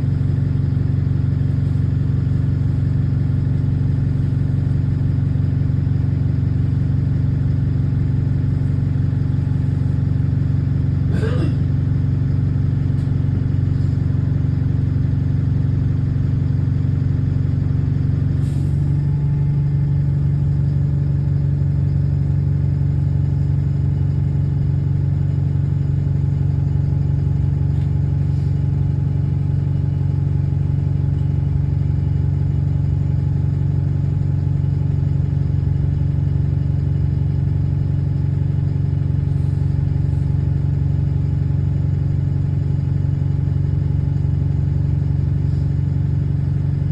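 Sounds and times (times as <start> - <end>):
bus diesel engine running: 0.0 - 46.9.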